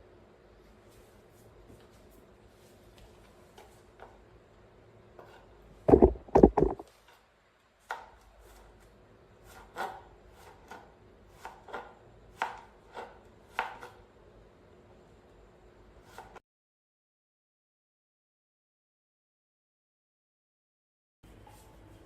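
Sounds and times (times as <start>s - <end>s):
hard object knocking on surface: 5.9s - 6.8s.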